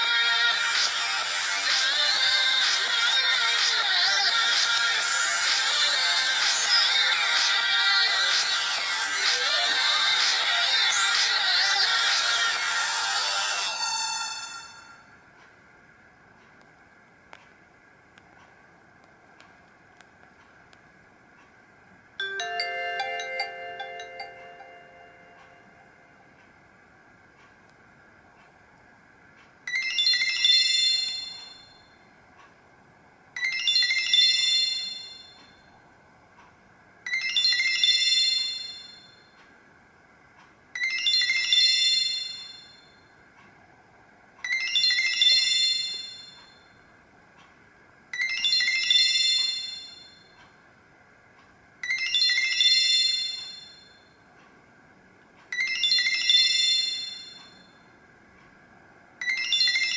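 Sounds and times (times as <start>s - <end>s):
mobile phone chime tone: 22.2s - 26.0s, 29.7s - 31.8s, 33.4s - 35.5s, 37.1s - 39.2s, 44.5s - 46.6s, 48.2s - 50.2s, 51.8s - 54.0s, 55.5s - 57.7s.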